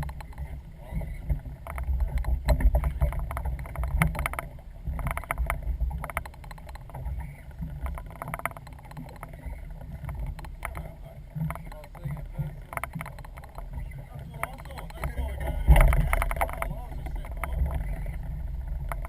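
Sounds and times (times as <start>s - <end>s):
water around a boat: 0.0s - 19.0s
wind rumble: 0.0s - 19.0s
clicks and knocks: 14.4s - 18.2s.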